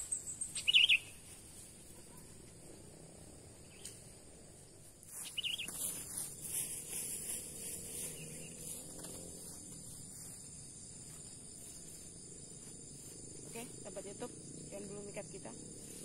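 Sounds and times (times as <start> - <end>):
bird chirps: 0.0 - 1.3, 5.2 - 5.8
insects buzzing: 0.0 - 16.0.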